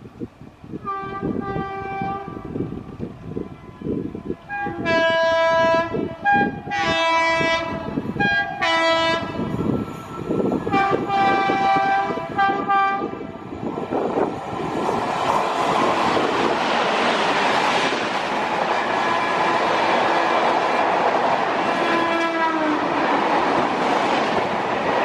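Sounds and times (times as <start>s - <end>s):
fast train rumbling past: 0.0s - 25.0s
locomotive horn blasts: 0.8s - 2.5s, 3.2s - 9.6s, 10.6s - 13.3s, 21.8s - 22.9s.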